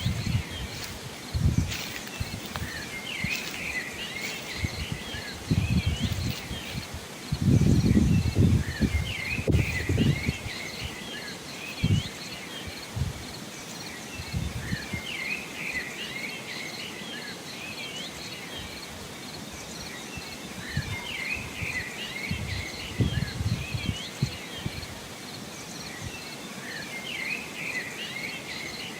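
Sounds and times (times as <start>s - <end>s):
small birds chirping: 0.0s - 18.8s.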